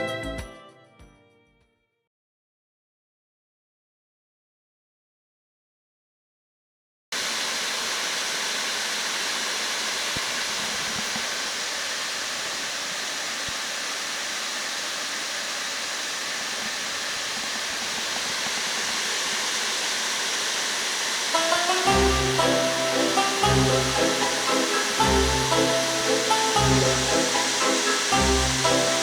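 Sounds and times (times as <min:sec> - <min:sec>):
air purifier fan rushing: 0:07.2 - 0:29.0.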